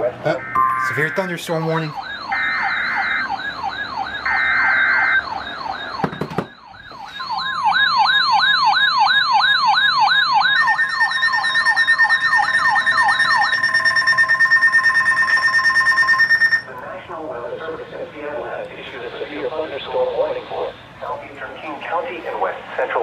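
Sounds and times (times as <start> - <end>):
wailing siren alert: 0.0 - 16.8
steady warning tone: 0.0 - 23.0
higher steady alert tone: 0.3 - 5.4
warbling data bursts: 0.3 - 5.6.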